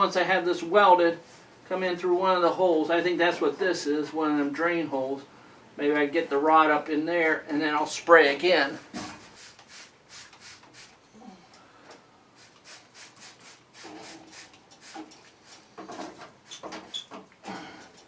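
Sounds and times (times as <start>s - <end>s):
rubbing and clicking of handled objects: 12.4s - 17.3s.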